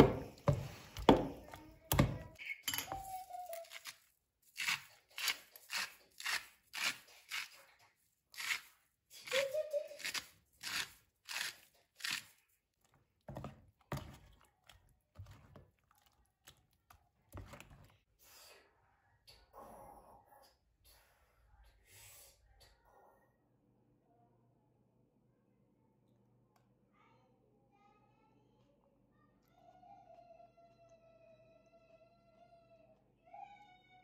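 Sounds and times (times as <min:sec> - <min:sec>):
crunching of crisp food: 0:08.4 - 0:13.1.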